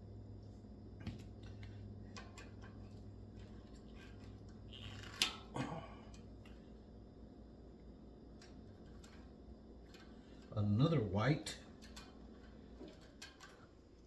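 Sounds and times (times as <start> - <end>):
steady low hum: 0.0 - 14.0
small metal clicks: 3.4 - 5.5, 8.4 - 10.5, 11.6 - 13.9.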